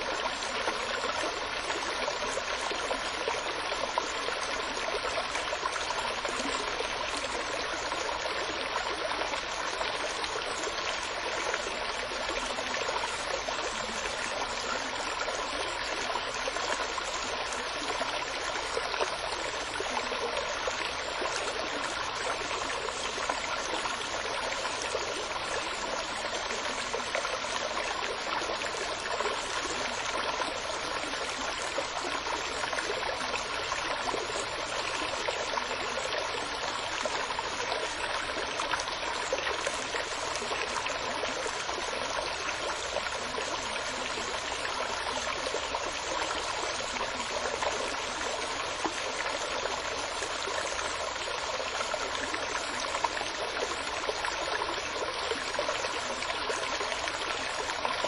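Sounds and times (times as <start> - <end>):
stream babbling: 0.0 - 58.0.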